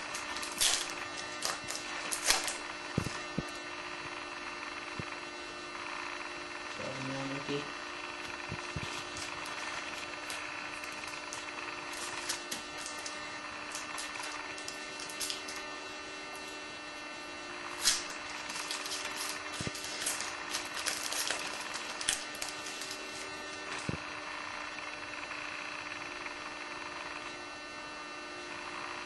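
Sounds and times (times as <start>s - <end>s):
cards and foil packs rustling: 0.0s - 3.7s, 8.2s - 15.7s, 17.7s - 24.0s
steady electrical hum: 0.0s - 29.0s.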